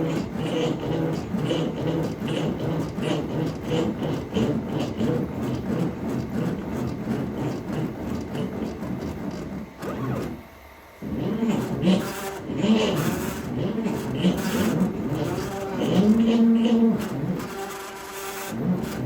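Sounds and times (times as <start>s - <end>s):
rhythmic scraping on wood: 0.0s - 10.0s, 11.5s - 19.0s.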